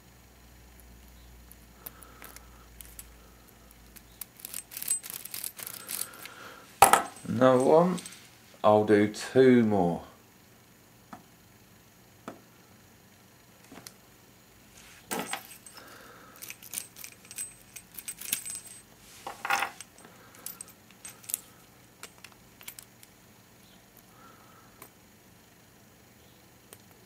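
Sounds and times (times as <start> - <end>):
lock pick clicking and rattling: 1.9 - 3.1, 3.8 - 6.4, 16.4 - 18.8, 22.0 - 23.1.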